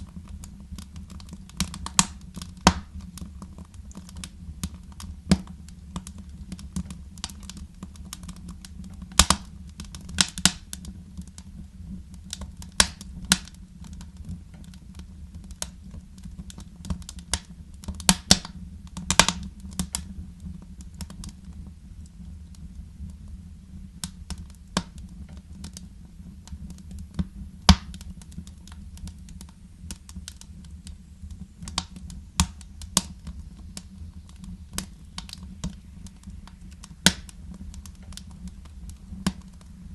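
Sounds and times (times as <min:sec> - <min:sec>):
wood fire crackling and popping: 0:00.0 - 0:39.9
steady low rumble: 0:18.5 - 0:39.9.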